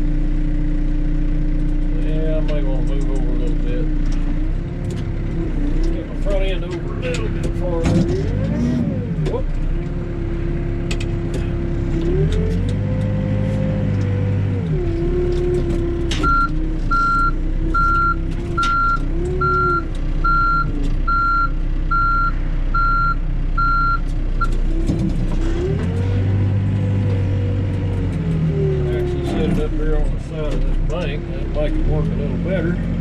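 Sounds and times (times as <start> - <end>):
diesel engine revving: 0.0 - 33.0
reverse alarm beeping: 16.2 - 24.0.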